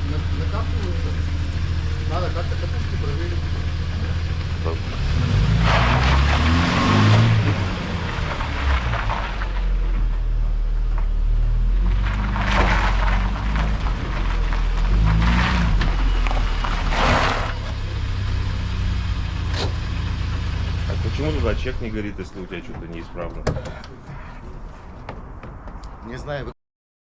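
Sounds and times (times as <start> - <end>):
misfiring car engine revving: 0.0 - 10.1, 11.3 - 22.6.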